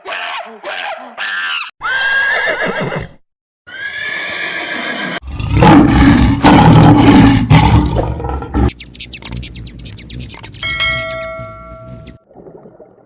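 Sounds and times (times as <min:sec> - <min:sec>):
high whinnying animal call: 0:00.3 - 0:03.1
rough animal roar: 0:05.2 - 0:08.7.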